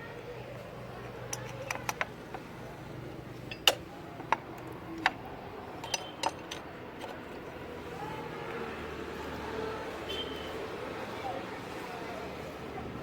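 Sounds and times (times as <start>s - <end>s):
metal tools clinking: 1.3s - 2.5s, 3.4s - 5.2s, 5.8s - 7.4s.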